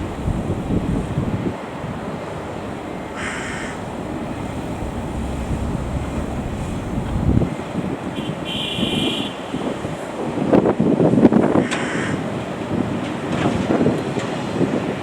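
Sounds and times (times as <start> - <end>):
excavator engine rumble: 0.0 - 8.2
wind buffeting microphone: 0.0 - 8.5
high-pitched squeal: 2.4 - 7.6.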